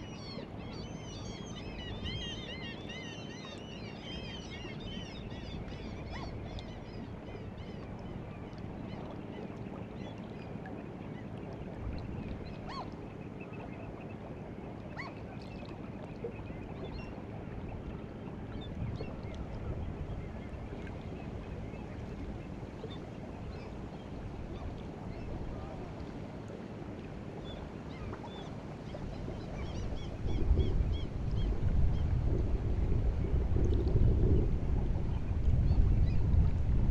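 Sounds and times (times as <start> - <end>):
sea water lapping on shore: 0.0 - 36.9
bird calls: 12.5 - 13.8.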